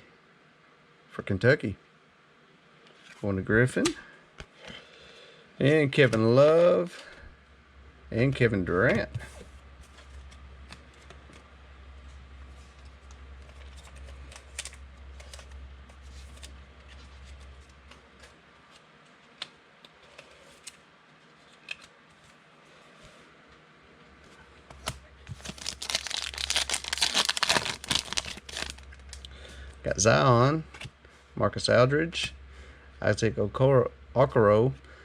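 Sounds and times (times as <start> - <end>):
low steady hum: 0.0 - 35.0
trading cards being handled: 24.7 - 29.2.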